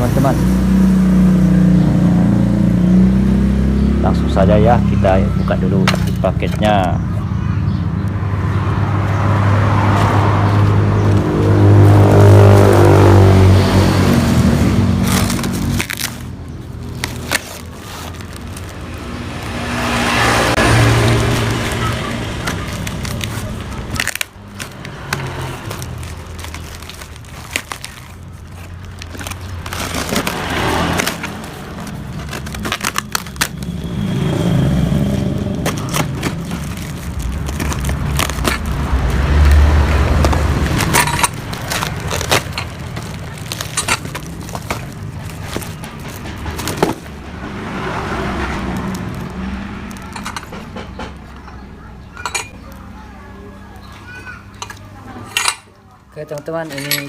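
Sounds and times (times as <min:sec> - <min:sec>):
passing traffic rumble: 0:00.0 - 0:57.0
plastic wrap and tape crackling: 0:09.4 - 0:53.0.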